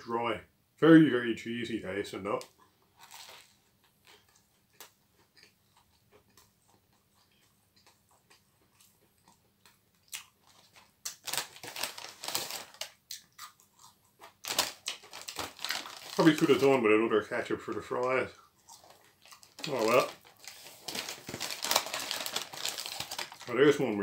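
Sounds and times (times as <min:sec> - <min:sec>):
person chewing crunchy food: 0:02.5 - 0:16.2, 0:18.3 - 0:23.5.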